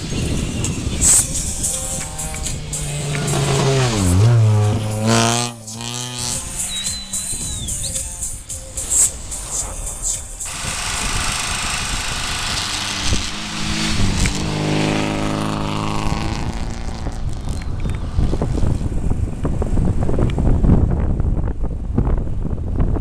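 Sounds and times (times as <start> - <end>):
racing car engine passing by: 0.0 - 19.0.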